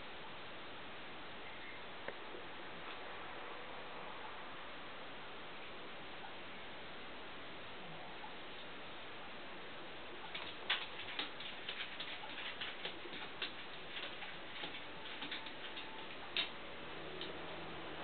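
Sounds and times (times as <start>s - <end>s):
dog claws clicking on hard floor: 10.3s - 16.6s.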